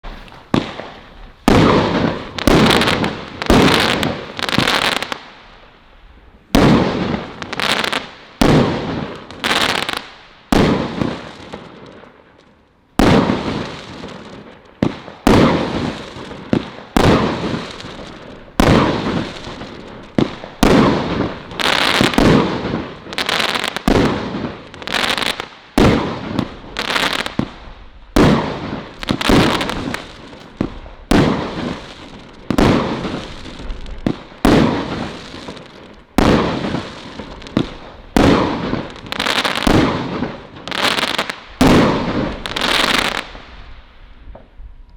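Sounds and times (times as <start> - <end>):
firework bangs and crackling: 0.0 - 44.9.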